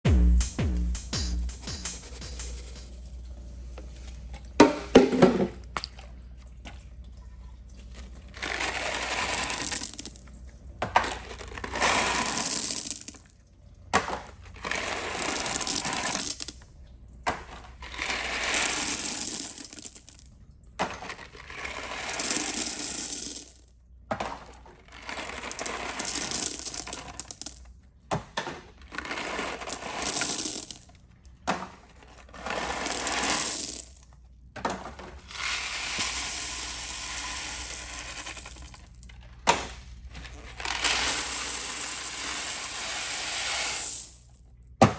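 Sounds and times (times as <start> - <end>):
small objects clattering: 8.3 - 13.2, 14.0 - 16.6, 17.3 - 27.7, 28.7 - 30.9, 31.5 - 44.4.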